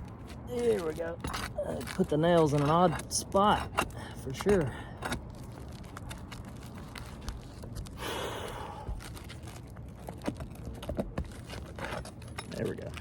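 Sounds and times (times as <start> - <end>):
pry bar scraping shingles: 0.2 - 7.8.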